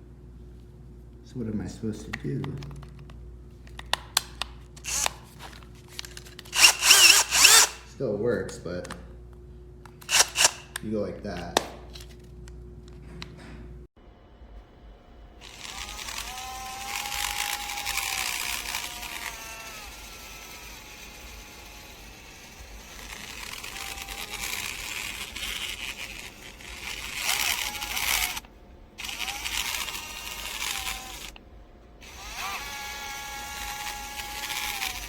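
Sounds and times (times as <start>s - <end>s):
screwdriver motor whine: 4.8s - 7.9s, 10.0s - 10.8s, 15.4s - 31.4s, 32.0s - 35.0s.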